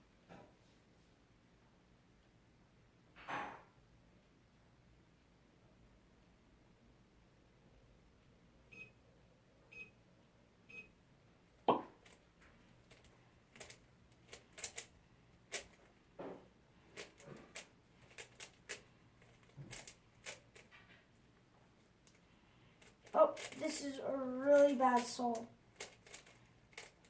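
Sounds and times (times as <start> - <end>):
timer beeps: 8.7 - 9.0, 9.7 - 9.9, 10.7 - 10.9
puzzle cube clicking: 12.9 - 14.9, 17.0 - 20.7, 22.8 - 23.8, 24.5 - 27.0.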